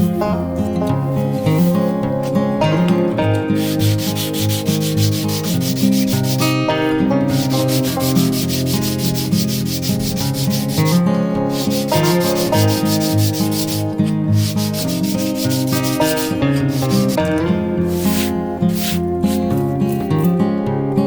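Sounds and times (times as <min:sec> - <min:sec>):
guitar music: 0:00.0 - 0:21.0
abrasive rubbing of steel blade: 0:01.2 - 0:02.0, 0:03.3 - 0:20.4.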